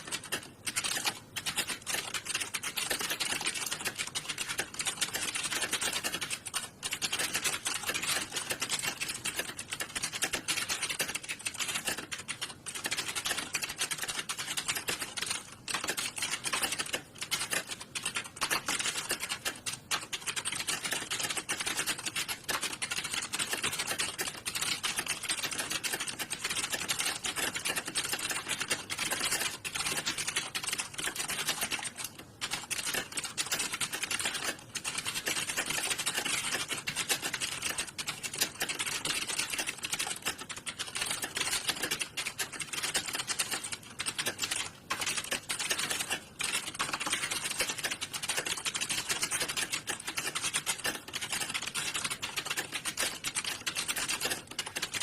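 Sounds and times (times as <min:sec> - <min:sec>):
many keyboards clattering: 0:00.0 - 0:55.0.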